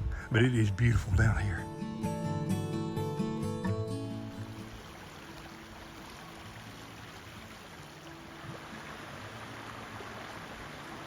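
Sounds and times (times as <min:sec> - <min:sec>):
creek water rushing over cascades: 0:04.3 - 0:11.0.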